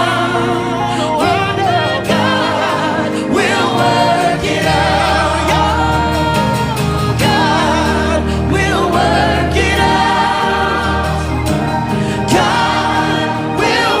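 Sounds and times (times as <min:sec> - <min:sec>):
choir singing with vibrato: 0:00.0 - 0:14.0
sustained instrumental backing: 0:00.0 - 0:14.0.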